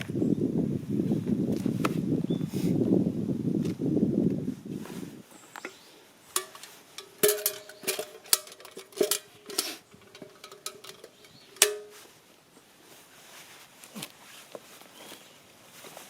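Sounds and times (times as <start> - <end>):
metal cookware clinking: 6.4 - 12.0.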